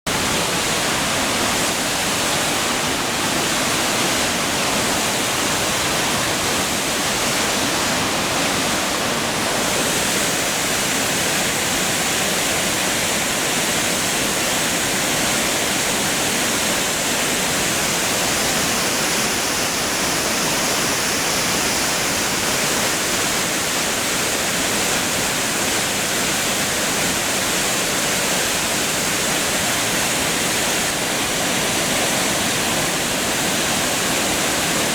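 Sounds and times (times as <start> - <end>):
waterfall rushing: 0.1 - 34.9.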